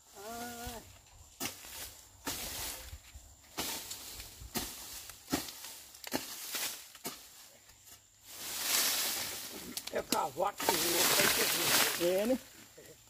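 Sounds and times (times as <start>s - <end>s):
scraping rustle of earth: 0.0s - 13.0s
hoe chopping into soil: 1.4s - 2.9s, 3.5s - 7.5s.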